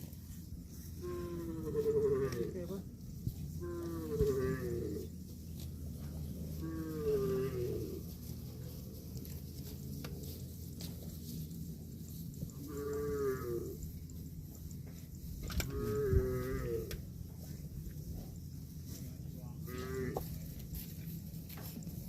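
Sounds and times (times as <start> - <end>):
cow mooing: 1.0 - 2.8, 3.6 - 5.1, 6.5 - 8.1, 12.6 - 13.8, 15.6 - 17.0, 19.6 - 20.3.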